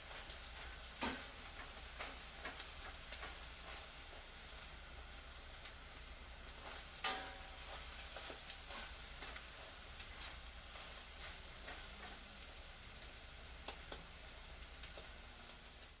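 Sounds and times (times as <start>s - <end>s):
steady hiss: 0.0s - 16.0s
utensils and dishes clinking: 7.0s - 7.7s.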